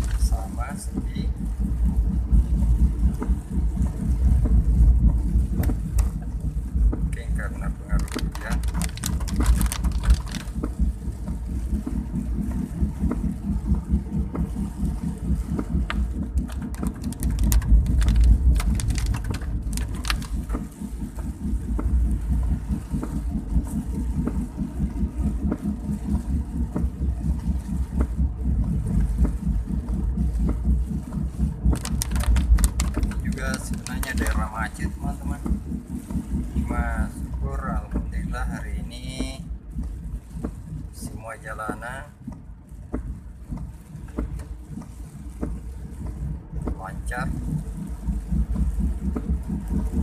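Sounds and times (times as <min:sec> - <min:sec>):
vehicle engine and road rumble: 0:00.0 - 0:50.0
sharp ticks: 0:15.9 - 0:20.4, 0:31.7 - 0:35.6.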